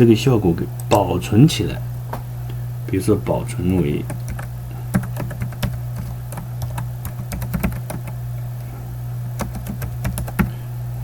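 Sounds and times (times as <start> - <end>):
steady low hum: 0.0 - 11.0
computer keyboard typing: 3.6 - 8.2, 9.4 - 10.5.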